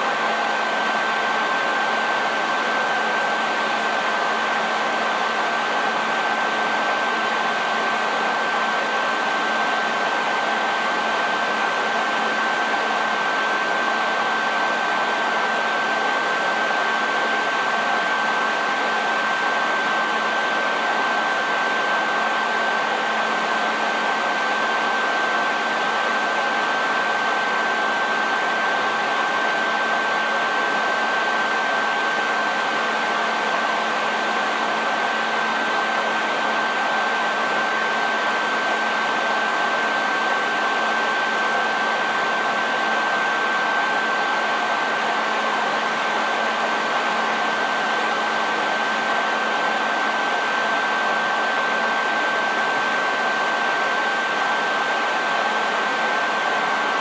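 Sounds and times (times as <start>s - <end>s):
hair dryer running: 26.0s - 57.0s.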